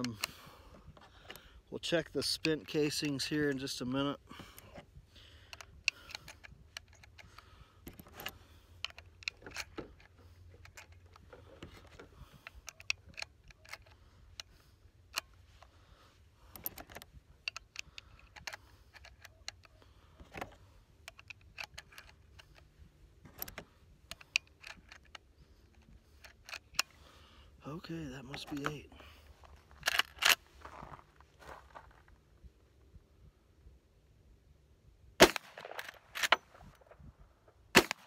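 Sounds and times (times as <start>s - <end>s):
cartridges clicking into rifle magazine: 4.6s - 15.3s, 16.6s - 22.7s, 23.3s - 27.0s, 29.7s - 30.4s.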